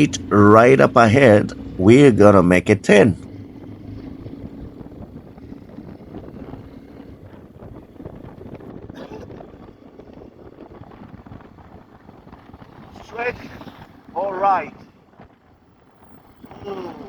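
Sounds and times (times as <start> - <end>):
motorcycle engine running: 0.0 - 17.0
wind rushing over microphone: 3.4 - 16.7.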